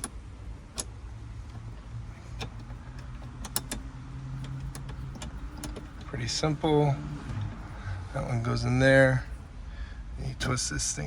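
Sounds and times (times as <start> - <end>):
steady low hum: 0.0 - 11.0
small screws clicking: 0.8 - 6.1
metal bracket tapping: 1.5 - 6.1.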